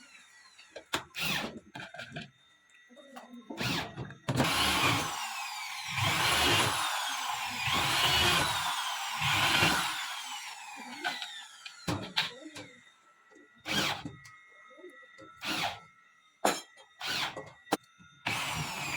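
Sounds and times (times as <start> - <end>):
power drill whining: 0.0 - 2.1, 3.5 - 18.9.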